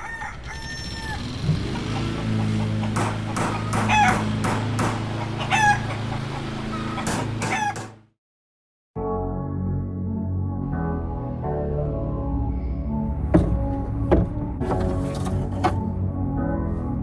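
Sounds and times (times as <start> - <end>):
rooster crowing: 0.0 - 1.5, 5.4 - 6.0
chickens clucking: 0.1 - 4.2, 5.1 - 7.8
music: 9.0 - 17.0.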